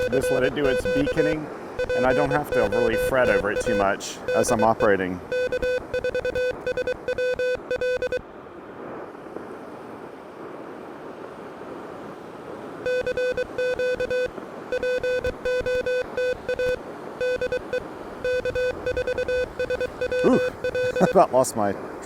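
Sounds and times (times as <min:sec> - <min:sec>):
morse code beeps: 0:00.0 - 0:08.2, 0:12.8 - 0:21.3.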